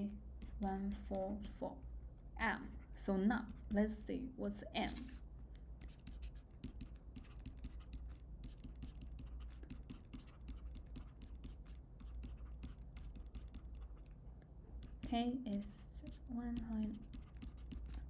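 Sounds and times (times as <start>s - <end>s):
steady low hum: 0.0s - 18.0s
pen scratching and tapping: 5.8s - 14.2s, 14.8s - 18.0s.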